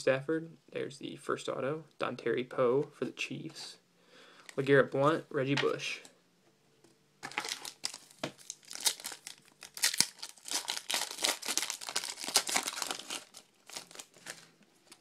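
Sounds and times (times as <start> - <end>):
foil wrapper crinkling: 7.2 - 15.0.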